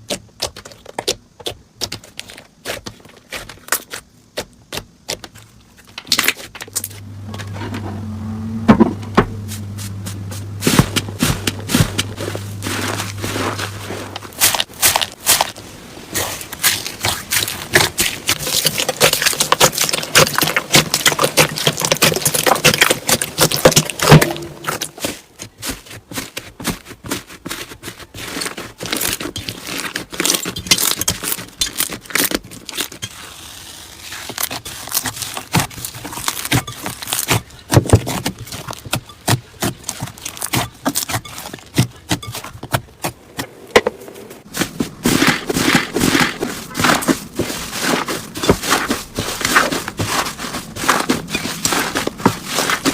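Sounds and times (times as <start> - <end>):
slime crackling and popping: 14.2 - 25.0, 28.3 - 42.2.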